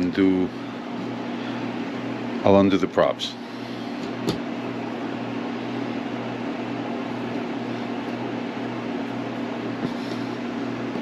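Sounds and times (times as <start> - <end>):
low motor hum: 0.0 - 11.0.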